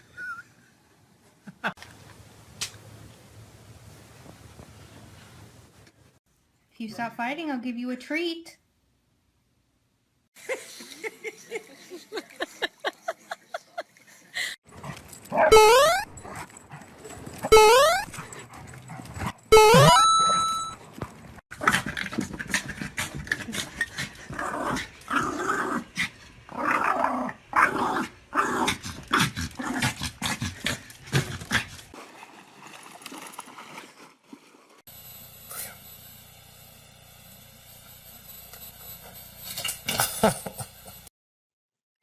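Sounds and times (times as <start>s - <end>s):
dogs growling: 21.6s - 31.9s.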